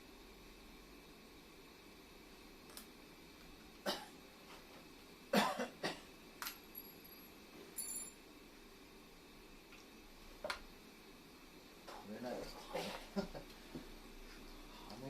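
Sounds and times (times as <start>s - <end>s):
high metallic rings: 6.7s - 8.2s.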